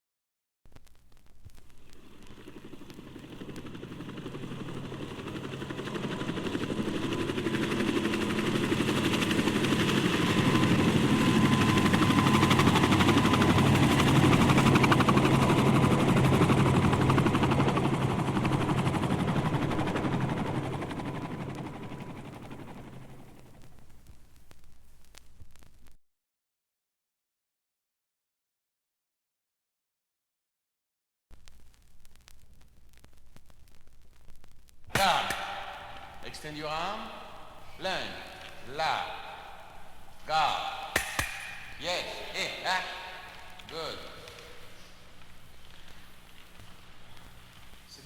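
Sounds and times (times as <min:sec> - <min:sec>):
aircraft flying over: 0:02.0 - 0:23.6.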